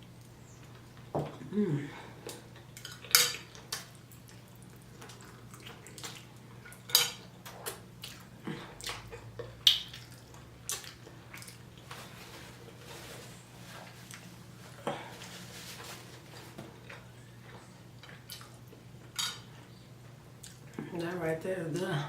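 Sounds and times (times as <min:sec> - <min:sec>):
low steady hum: 0:00.0 - 0:22.0
cutlery clinking against dish: 0:02.8 - 0:03.4, 0:06.9 - 0:07.2, 0:19.2 - 0:19.5.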